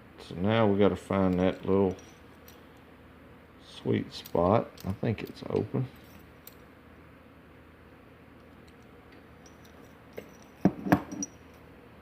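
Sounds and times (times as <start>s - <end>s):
lock picking tools ticking: 4.2s - 5.7s.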